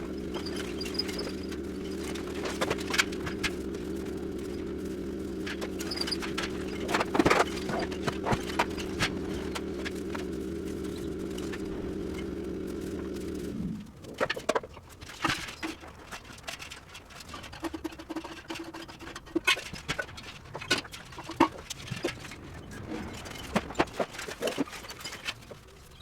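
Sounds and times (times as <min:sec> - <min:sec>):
machine hum: 0:00.0 - 0:14.6.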